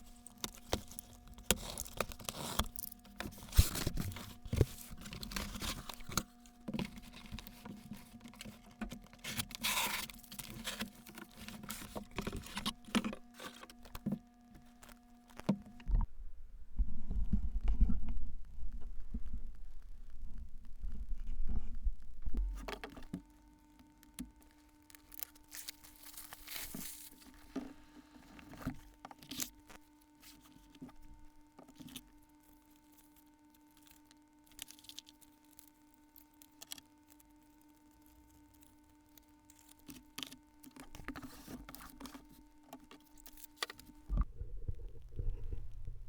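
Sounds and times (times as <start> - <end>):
paper crinkling: 0.0 - 15.9, 22.6 - 45.9
faint electrical hum: 0.0 - 46.0
low steady rumble: 15.7 - 22.7, 43.2 - 46.0.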